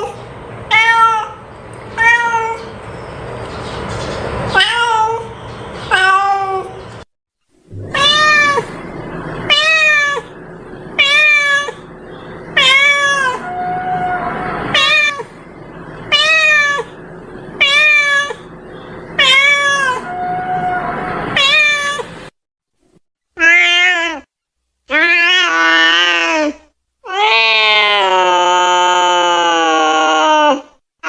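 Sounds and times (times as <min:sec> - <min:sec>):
cat meowing: 0:00.7 - 0:01.4, 0:02.0 - 0:02.7, 0:07.8 - 0:08.8, 0:09.5 - 0:10.3, 0:11.0 - 0:11.9, 0:12.6 - 0:15.3, 0:16.1 - 0:17.0, 0:17.6 - 0:18.5, 0:19.2 - 0:22.2, 0:23.4 - 0:24.3, 0:24.9 - 0:29.5.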